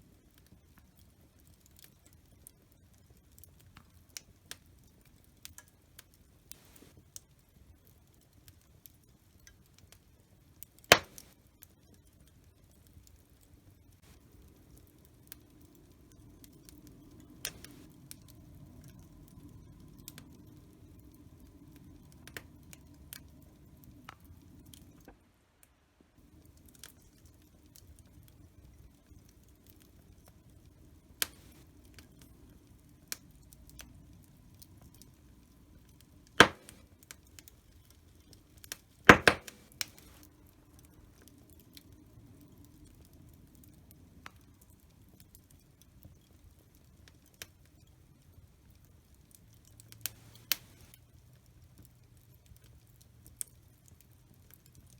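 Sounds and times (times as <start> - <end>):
fire rumbling with crackles: 0.0 - 25.3, 26.1 - 54.9
cracks from fire: 0.0 - 54.9
loud pop from fire: 10.9 - 11.3, 36.4 - 36.8, 39.1 - 40.1.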